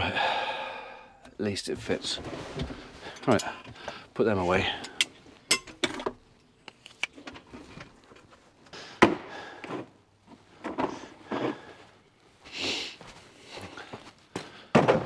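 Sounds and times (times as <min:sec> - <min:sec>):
hand tools clicking and knocking: 0:01.2 - 0:08.3.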